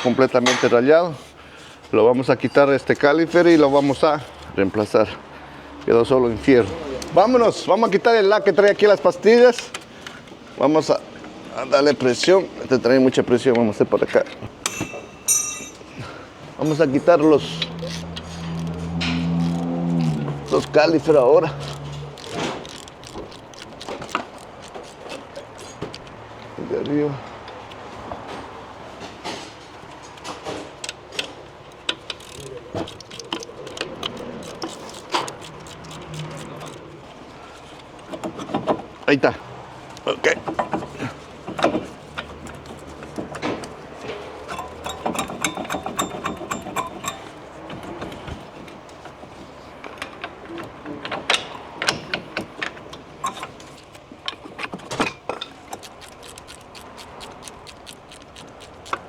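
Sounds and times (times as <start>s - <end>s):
metal knocks: 0.0s - 0.9s, 14.6s - 16.0s
metal brake parts clinking: 14.5s - 19.2s, 40.2s - 49.2s, 51.2s - 55.8s
metallic clicks of hand tools: 30.8s - 36.9s, 41.5s - 48.3s.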